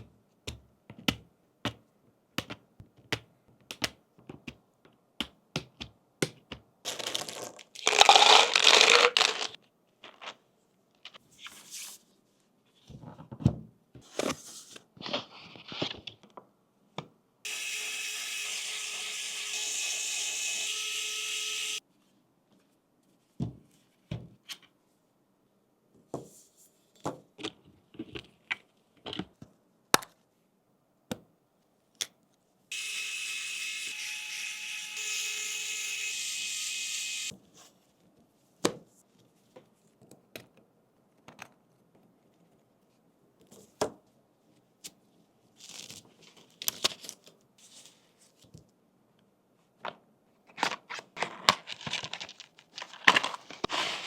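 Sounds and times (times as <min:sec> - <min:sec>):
electric screwdriver whining: 0:17.5 - 0:21.8, 0:32.7 - 0:37.3.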